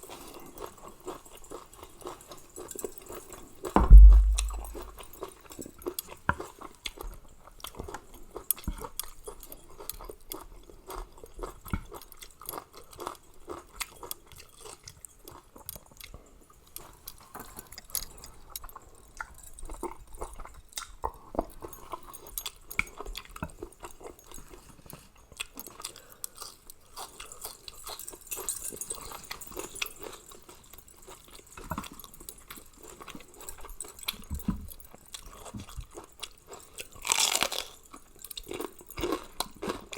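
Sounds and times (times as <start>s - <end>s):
person chewing: 25.4s - 28.5s, 35.1s - 39.9s.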